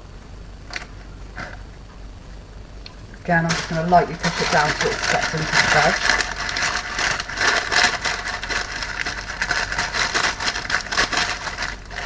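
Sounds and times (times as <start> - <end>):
biscuit pieces crunching: 2.9 - 12.0.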